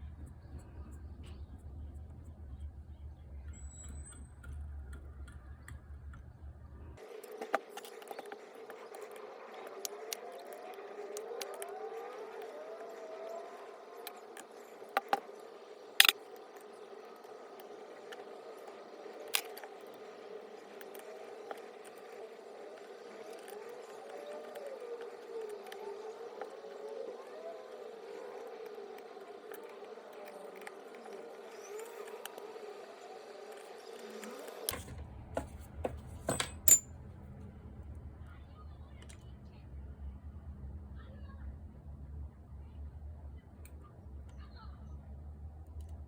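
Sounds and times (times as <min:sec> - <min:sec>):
metallic ring: 0:36.3 - 0:36.9.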